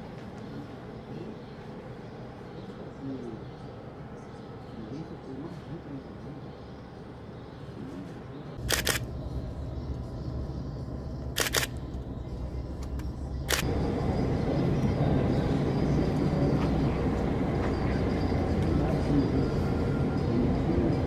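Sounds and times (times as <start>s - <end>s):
camera shutter clicks: 8.6s - 9.1s, 11.4s - 11.8s, 12.8s - 13.6s
jet engines rumbling: 8.6s - 21.0s.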